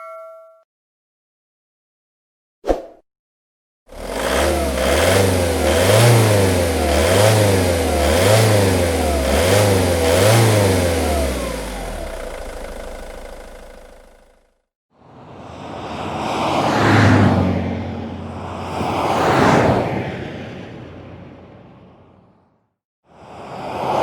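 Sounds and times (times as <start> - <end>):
car engine revving: 3.9 - 14.5.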